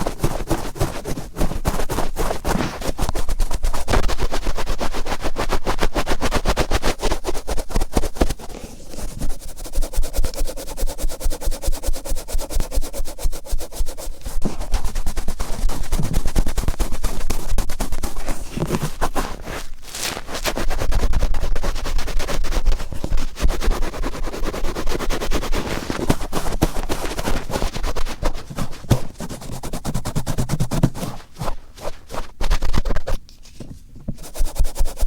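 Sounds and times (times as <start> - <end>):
cotton swab rubbing microphone: 0.0 - 35.0.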